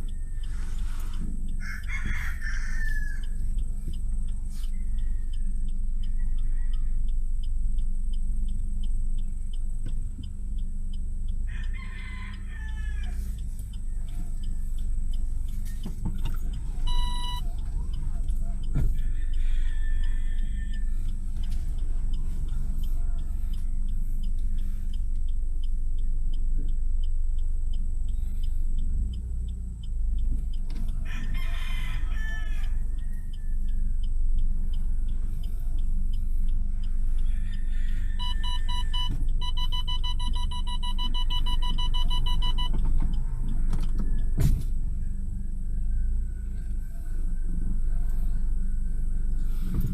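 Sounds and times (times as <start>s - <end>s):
roosters crowing: 0.0s - 3.6s, 4.5s - 7.2s, 11.4s - 24.0s, 30.7s - 34.0s, 36.0s - 39.4s, 42.8s - 49.9s
steady low rumble: 3.2s - 31.4s, 32.0s - 43.6s.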